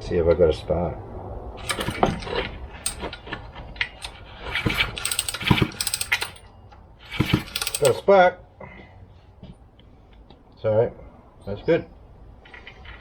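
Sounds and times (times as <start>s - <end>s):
chainsaw starter cord pulled: 1.6s - 3.2s, 4.0s - 6.4s, 7.1s - 8.0s
engine turning over clicking: 1.6s - 6.5s, 7.1s - 8.0s.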